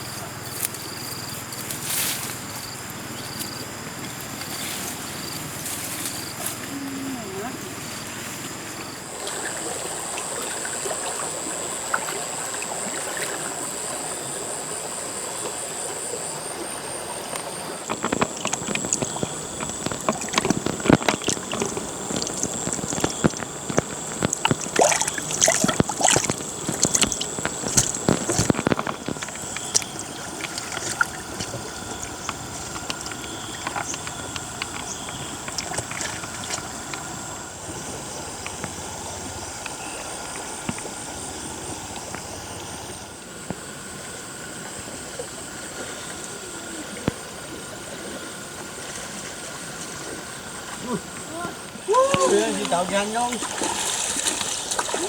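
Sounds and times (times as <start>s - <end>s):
high-pitched insect drone: 0.0s - 43.4s
water trickling and splashing: 0.0s - 55.0s
sharp splashes and knocks: 17.4s - 37.2s, 51.8s - 55.0s.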